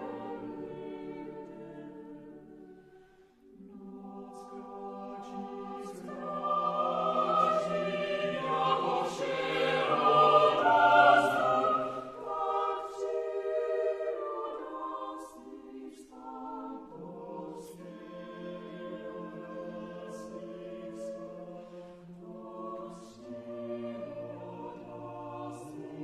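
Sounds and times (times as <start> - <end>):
unaccompanied mixed choir singing: 0.0 - 26.0.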